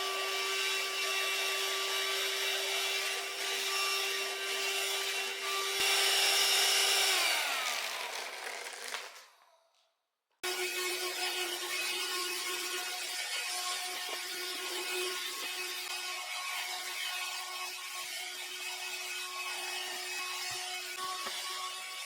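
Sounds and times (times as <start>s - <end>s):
handheld vacuum cleaner running: 0.0s - 9.2s
vacuum motor winding down: 5.7s - 9.0s.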